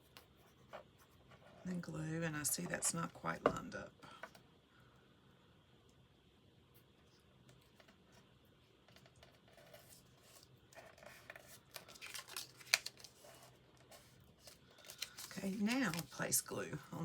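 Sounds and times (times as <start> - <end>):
paper rustling and clicking: 8.9 - 16.3.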